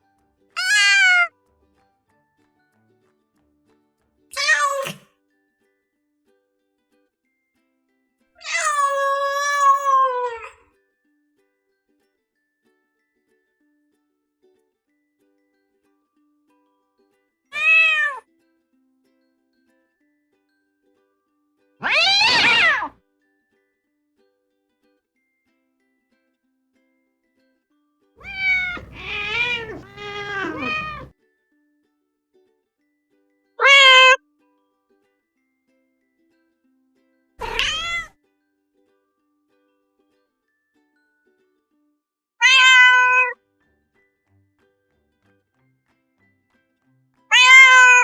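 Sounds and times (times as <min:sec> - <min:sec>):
cat meowing: 0:00.6 - 0:01.3, 0:04.4 - 0:05.0, 0:08.4 - 0:10.6, 0:17.6 - 0:18.2, 0:21.8 - 0:22.9, 0:28.2 - 0:31.1, 0:33.6 - 0:34.2, 0:37.4 - 0:38.1, 0:42.4 - 0:43.3, 0:47.3 - 0:48.0.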